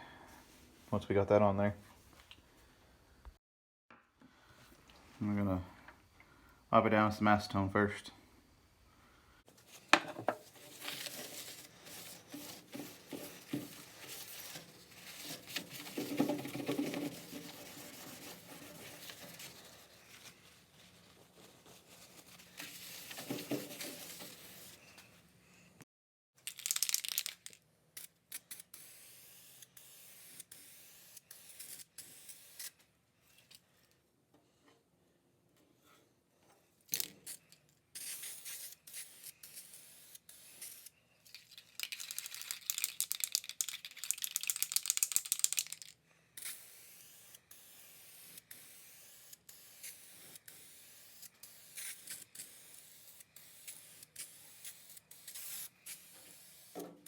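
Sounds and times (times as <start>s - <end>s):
aerosol primer spraying: 22.4s - 24.8s, 38.0s - 40.9s, 46.4s - 56.8s.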